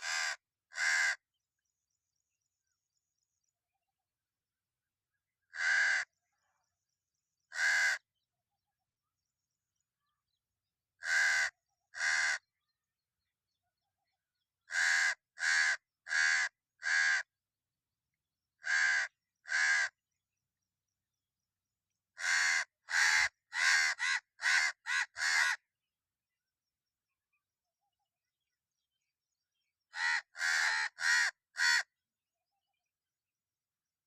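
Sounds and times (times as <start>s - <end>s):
crow cawing: 0.0s - 1.2s, 5.5s - 6.2s, 7.5s - 8.0s, 11.0s - 12.5s, 14.7s - 17.3s, 18.6s - 20.0s, 22.2s - 25.6s, 29.9s - 31.9s.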